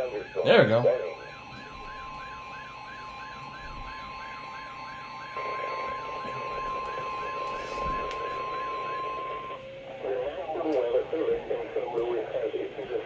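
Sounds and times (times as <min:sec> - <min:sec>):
steady alert tone: 0:00.0 - 0:01.4
radio static: 0:00.0 - 0:02.2, 0:05.4 - 0:13.0
warbling alarm: 0:00.0 - 0:13.0.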